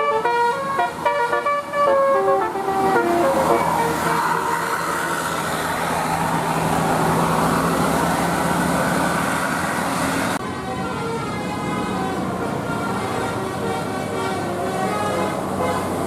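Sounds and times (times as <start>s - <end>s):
bus horn multi-tone notes: 0.0s - 5.2s, 10.3s - 16.0s
engine and road noise: 0.0s - 16.0s.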